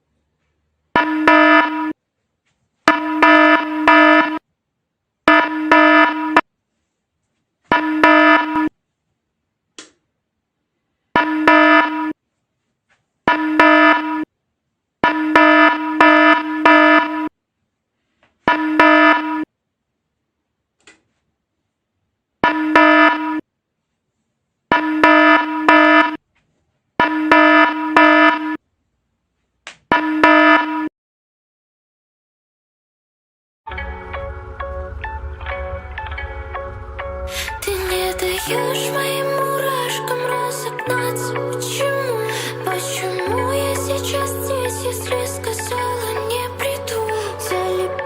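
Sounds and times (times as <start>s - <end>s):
alarm buzzer blasts: 1.0s - 1.9s, 2.9s - 4.4s, 5.3s - 6.4s, 7.7s - 8.7s, 11.2s - 12.0s, 13.3s - 14.1s, 15.0s - 17.3s.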